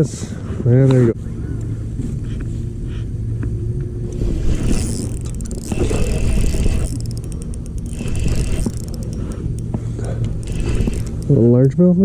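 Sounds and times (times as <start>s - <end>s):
boat motor humming: 4.2s - 11.6s
fast clicks: 4.5s - 11.7s.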